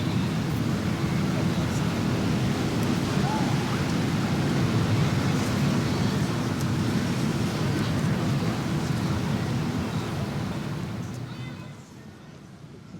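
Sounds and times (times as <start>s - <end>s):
faint indistinct voices: 11.0s - 12.9s.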